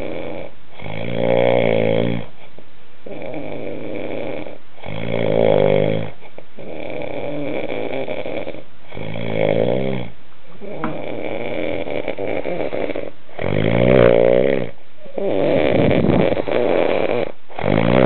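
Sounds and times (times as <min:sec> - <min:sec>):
man snoring loudly: 0:00.0 - 0:02.3, 0:03.1 - 0:18.0.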